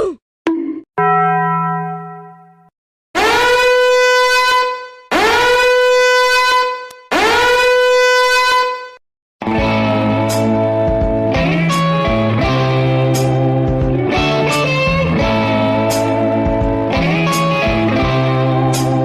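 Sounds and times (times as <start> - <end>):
tone: 0.5 - 2.7
horn blasts: 3.2 - 9.0.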